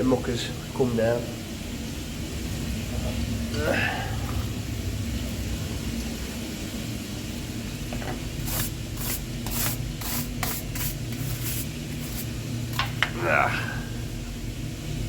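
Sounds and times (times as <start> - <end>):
low hum of equipment: 0.0 - 15.0
spray can hissing bursts: 8.4 - 12.4.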